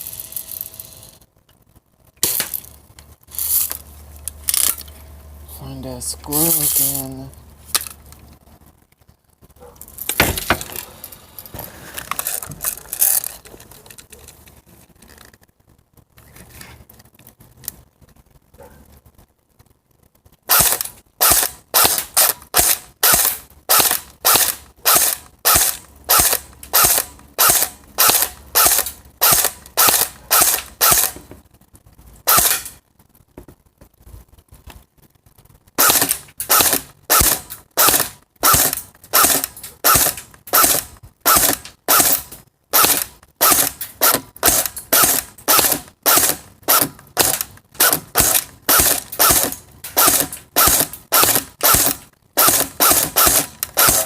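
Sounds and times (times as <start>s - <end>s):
airsoft rifle shots: 10.1s - 10.9s, 20.5s - 31.2s, 32.3s - 32.8s, 35.8s - 54.0s.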